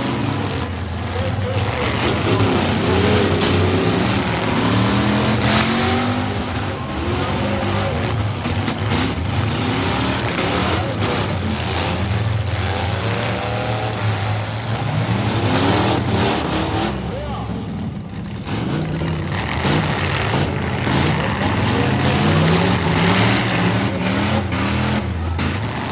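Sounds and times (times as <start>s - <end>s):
car engines revving: 0.0s - 25.9s
constant loud din: 0.0s - 25.9s.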